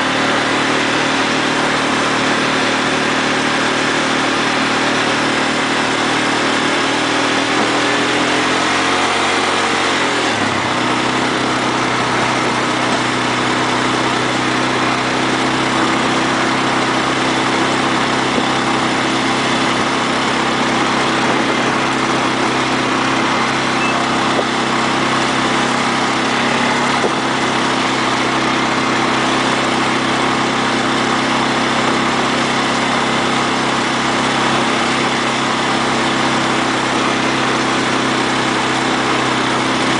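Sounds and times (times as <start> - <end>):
atv engine running: 0.0 - 39.9.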